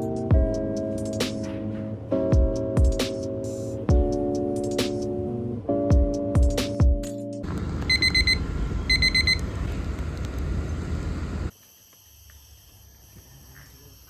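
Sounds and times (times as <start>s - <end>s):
electronic alarm beeping: 7.9s - 9.7s
insect-like chirring: 11.6s - 14.0s.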